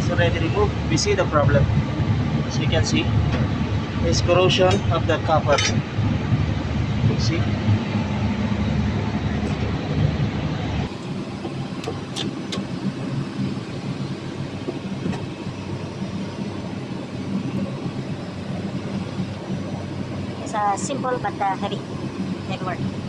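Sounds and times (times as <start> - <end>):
low machine rumble: 0.0 - 23.0.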